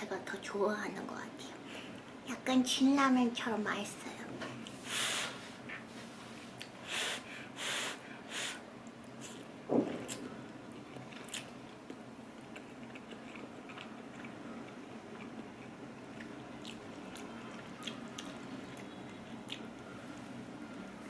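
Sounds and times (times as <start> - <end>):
person chewing noodles: 9.0 - 20.0.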